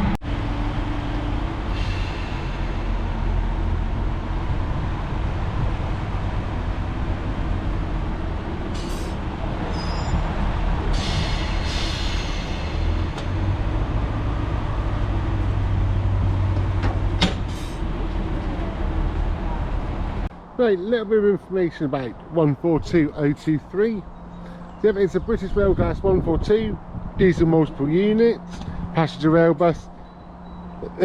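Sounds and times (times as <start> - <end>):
diesel engine idling: 0.0 - 25.8
air hissing: 8.7 - 9.3, 10.9 - 13.6.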